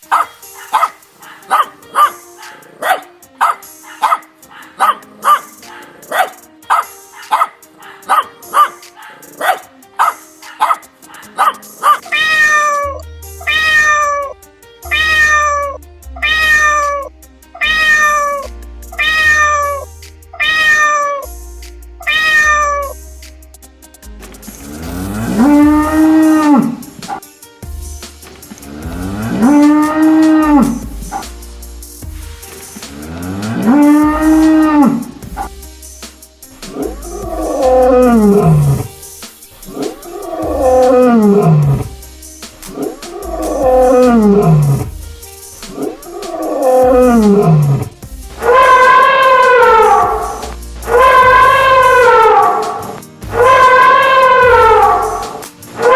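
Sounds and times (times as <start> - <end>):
cat meowing: 11.8 - 14.3, 14.9 - 21.3, 22.1 - 23.0, 36.8 - 38.9, 39.8 - 41.9, 43.1 - 44.9, 45.8 - 55.4
low musical bass: 12.8 - 20.5, 21.3 - 27.0, 27.6 - 39.1, 39.7 - 48.9, 49.6 - 55.3
deep cow moo: 46.3 - 47.8.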